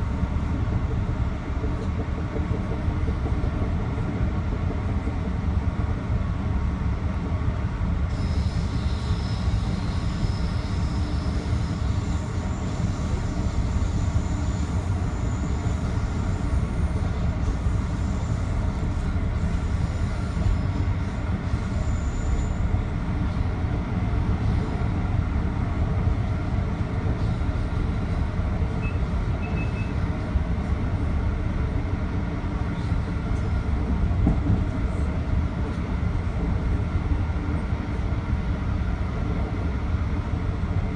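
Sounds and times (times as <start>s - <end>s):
train rumbling on rails: 0.0s - 40.9s
high-pitched wheel squeal: 8.2s - 18.7s.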